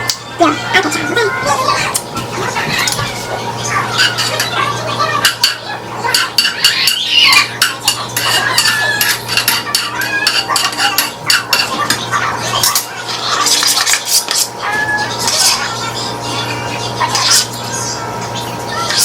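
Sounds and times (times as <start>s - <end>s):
steady low hum: 0.0s - 19.0s
utensil scraping in a pan: 3.9s - 14.6s.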